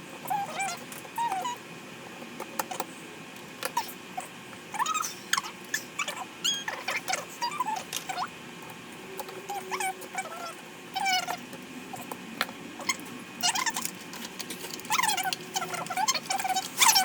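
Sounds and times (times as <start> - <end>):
small animal squeaks and chirps: 4.7 - 8.3, 14.9 - 17.0.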